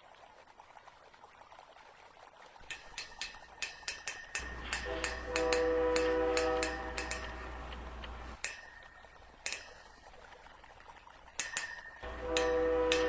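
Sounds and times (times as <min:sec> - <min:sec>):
sharp irregular clicks: 0:02.7 - 0:08.8, 0:09.4 - 0:09.9, 0:11.4 - 0:13.0
low hum: 0:02.8 - 0:10.4, 0:11.4 - 0:13.0.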